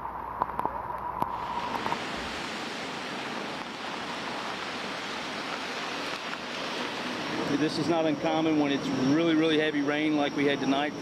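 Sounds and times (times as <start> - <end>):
floodwater rushing: 1.2 - 9.8.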